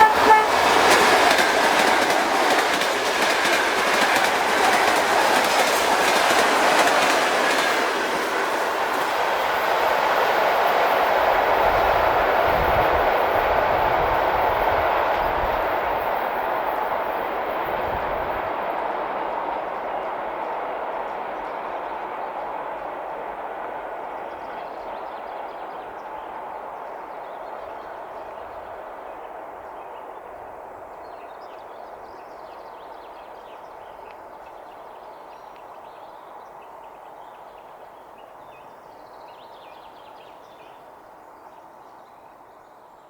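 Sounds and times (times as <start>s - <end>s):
train rolling away: 0.0s - 22.6s.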